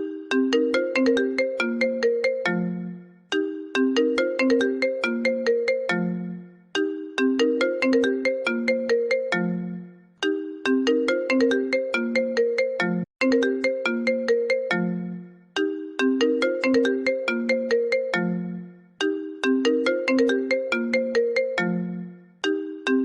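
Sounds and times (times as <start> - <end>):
phone ringtone melody: 0.0 - 23.0.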